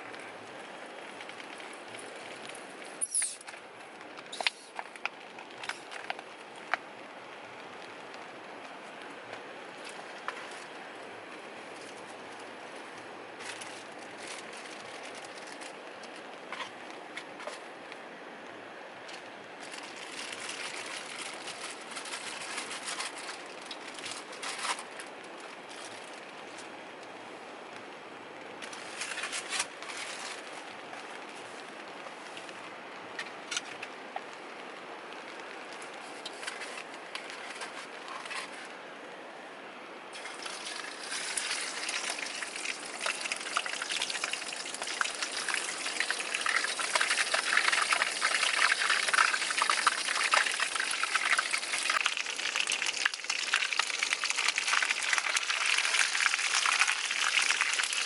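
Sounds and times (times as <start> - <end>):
chicken sizzling in frying oil: 40.2 - 58.0.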